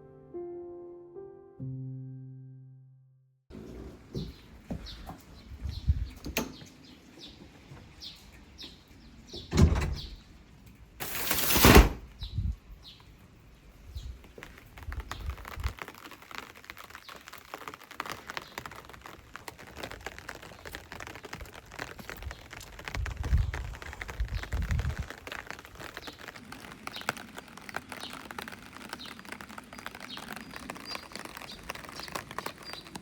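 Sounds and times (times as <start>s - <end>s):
rain pattering: 3.5s - 9.4s, 10.2s - 33.0s
birds chirping: 4.0s - 15.6s, 20.5s - 33.0s
sliding rush: 11.0s - 12.1s.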